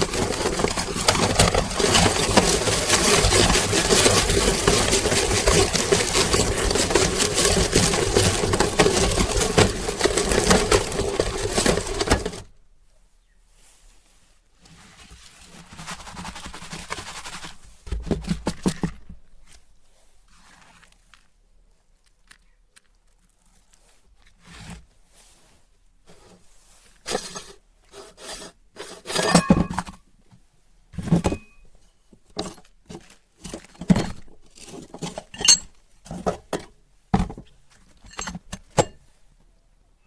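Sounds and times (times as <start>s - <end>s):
hard candy cracking in meat grinder: 0.0s - 12.4s.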